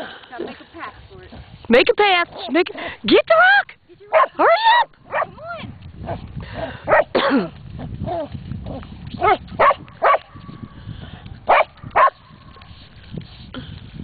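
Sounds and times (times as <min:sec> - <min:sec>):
dog barking: 0:04.1 - 0:05.4, 0:06.9 - 0:07.2, 0:09.2 - 0:10.3, 0:11.5 - 0:12.2.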